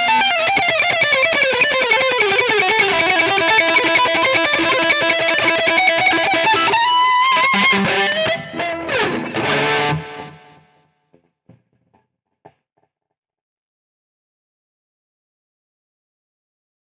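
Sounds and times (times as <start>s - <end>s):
distorted electric guitar: 0.0s - 10.9s.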